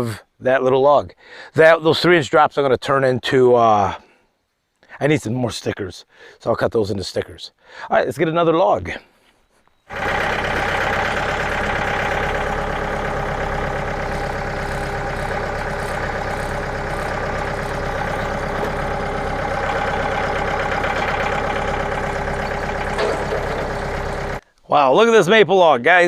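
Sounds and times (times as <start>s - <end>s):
tractor engine idling: 9.9s - 24.4s.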